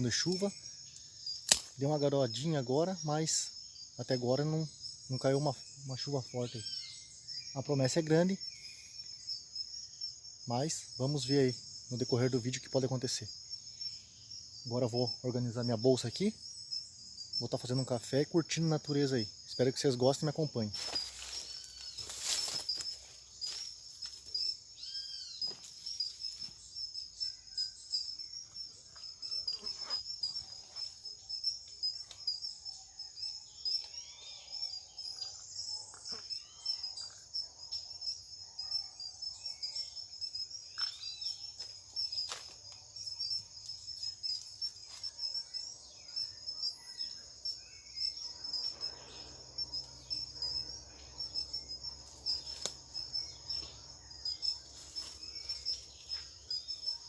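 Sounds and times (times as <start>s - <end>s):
high-pitched insect trill: 0.0s - 57.0s
bird chirps: 3.8s - 9.5s, 19.1s - 23.2s, 24.3s - 42.3s.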